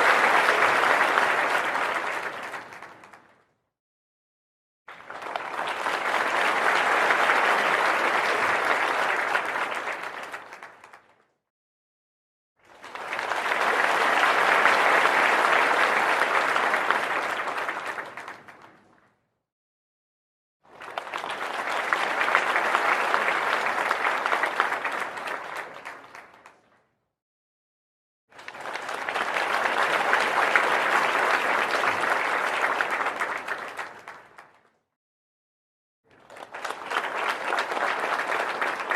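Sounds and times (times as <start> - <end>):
audience applause: 0.0 - 3.3, 4.9 - 11.1, 12.6 - 18.8, 20.7 - 26.6, 28.4 - 34.6, 36.1 - 38.9.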